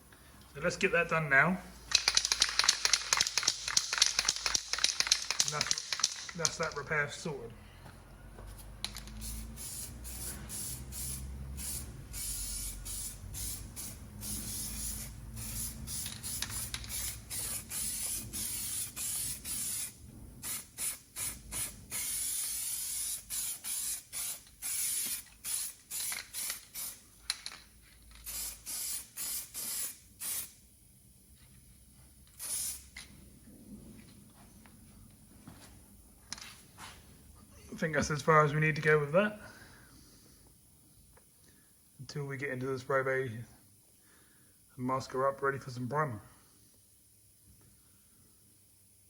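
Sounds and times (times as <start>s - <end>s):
aerosol can spraying: 1.9s - 6.5s, 8.5s - 27.0s, 28.2s - 30.6s, 32.4s - 33.0s.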